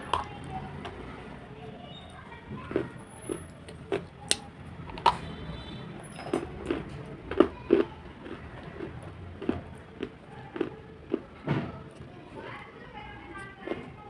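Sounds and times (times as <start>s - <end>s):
person chewing chalk crunching: 0.0s - 1.2s, 2.6s - 5.2s, 6.7s - 11.4s.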